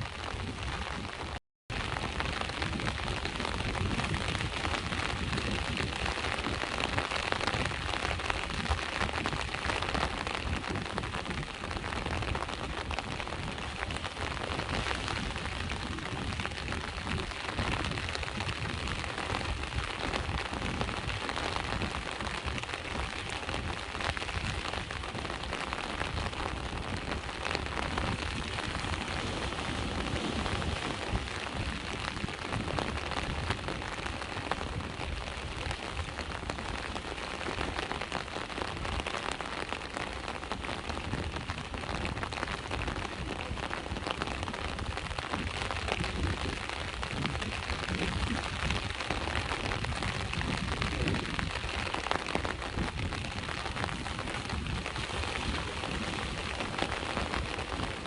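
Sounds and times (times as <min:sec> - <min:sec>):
steady rain: 0:00.0 - 0:58.0
sea waves washing: 0:21.0 - 0:39.4, 0:52.6 - 0:58.0.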